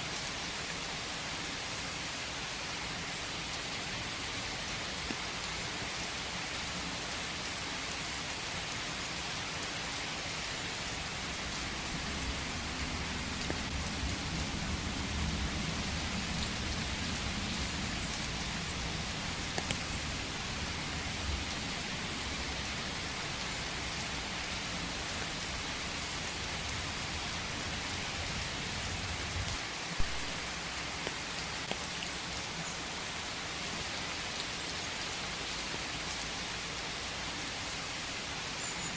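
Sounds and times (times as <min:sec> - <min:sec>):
steady rain hiss: 0:00.0 - 0:38.9
rain drop ticks: 0:11.2 - 0:25.7, 0:26.4 - 0:32.6
low rumble: 0:11.3 - 0:22.8.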